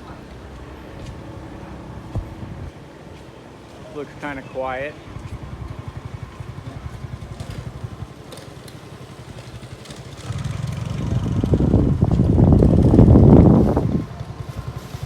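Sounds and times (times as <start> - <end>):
motorcycle engine running: 5.0 - 15.0.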